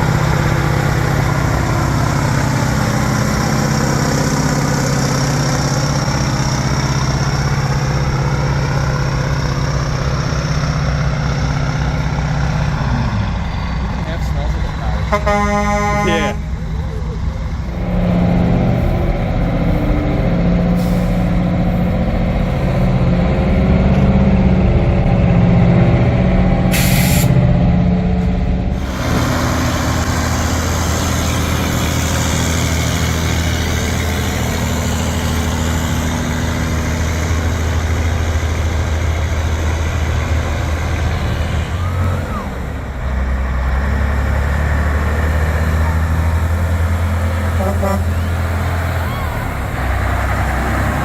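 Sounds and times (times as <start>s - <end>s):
diesel truck engines running: 0.0s - 51.0s
road noise: 0.0s - 51.0s
truck pulling past: 0.0s - 51.0s
air brake hiss: 20.8s - 21.3s, 26.7s - 27.4s.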